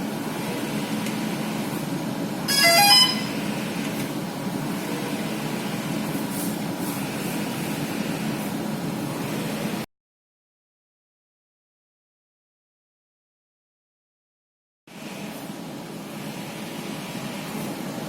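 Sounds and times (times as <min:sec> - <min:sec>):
steady mechanical hum: 0:00.0 - 0:09.9, 0:14.9 - 0:18.0.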